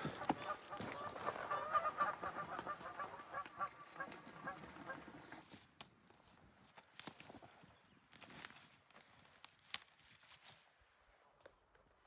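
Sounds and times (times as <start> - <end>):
flock of birds calling: 0.0 - 5.3.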